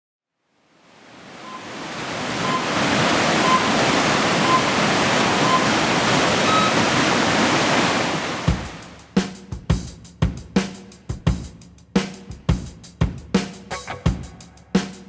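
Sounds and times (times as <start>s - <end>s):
rushing whitewater: 0.8s - 9.0s
electronic countdown beeps: 1.4s - 1.8s, 2.4s - 6.9s.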